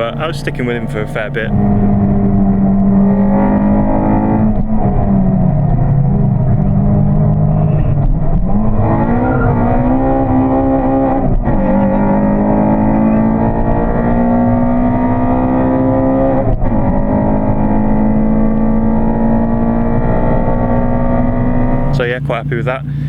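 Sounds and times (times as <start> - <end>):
gear upshifts: 0.0 - 18.3
car engine accelerating hard: 0.0 - 23.0.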